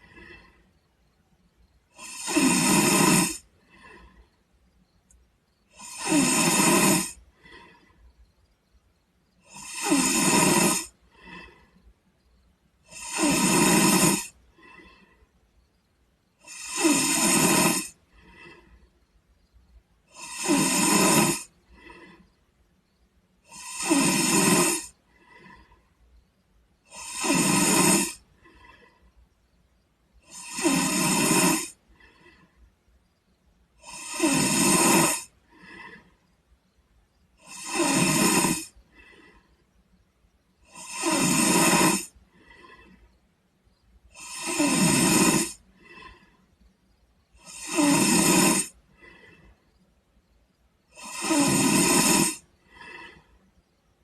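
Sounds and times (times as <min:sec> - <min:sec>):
boy snoring: 0:00.0 - 0:00.7, 0:01.9 - 0:04.3, 0:05.7 - 0:08.0, 0:09.4 - 0:11.8, 0:12.8 - 0:15.3, 0:16.4 - 0:18.8, 0:20.0 - 0:22.3, 0:23.4 - 0:25.8, 0:26.8 - 0:29.0, 0:30.2 - 0:32.5, 0:33.8 - 0:36.2, 0:37.4 - 0:39.5, 0:40.6 - 0:43.1, 0:44.1 - 0:46.4, 0:47.3 - 0:49.5, 0:50.9 - 0:53.4.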